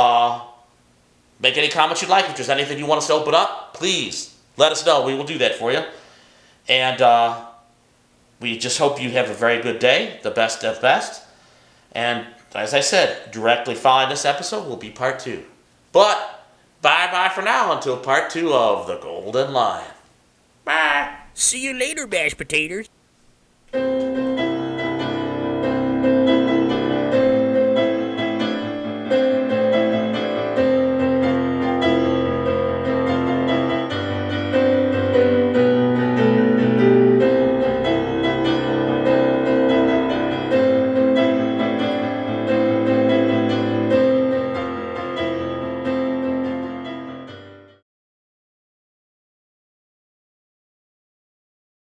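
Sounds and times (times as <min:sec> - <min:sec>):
piano music with bass line: 0:23.8 - 0:47.8.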